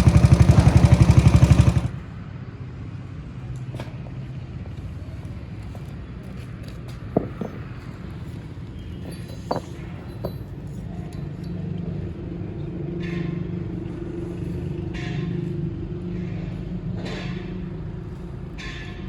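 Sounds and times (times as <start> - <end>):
machine humming: 0.0 - 1.9
knocks: 7.2 - 7.6.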